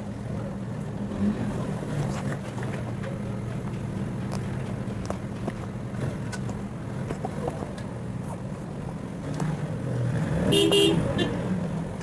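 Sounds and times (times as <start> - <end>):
passing vehicles engine hum: 0.0 - 12.0.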